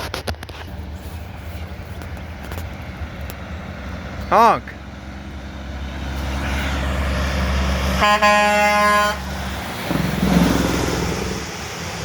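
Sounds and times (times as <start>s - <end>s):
truck engine rumbling: 0.0s - 12.0s
truck horn blast: 7.9s - 9.4s.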